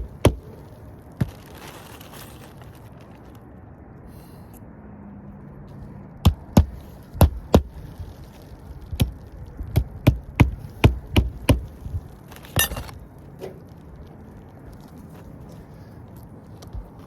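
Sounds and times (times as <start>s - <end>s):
rustling scrape: 0.4s - 3.4s, 11.7s - 13.0s.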